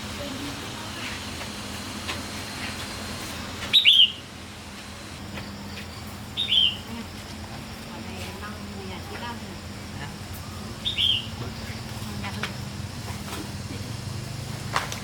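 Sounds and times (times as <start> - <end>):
steady low hum: 0.0 - 15.0
bird chirping high notes: 3.7 - 4.4.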